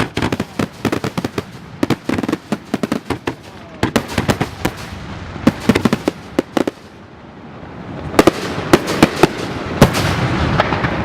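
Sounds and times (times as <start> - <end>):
fireworks bangs and crackles: 0.0 - 11.0
rumble: 3.4 - 11.0.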